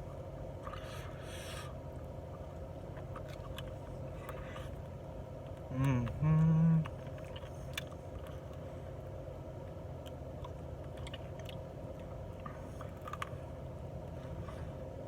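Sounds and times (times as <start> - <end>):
steady low hum: 0.0 - 15.0
person chewing: 10.0 - 13.4.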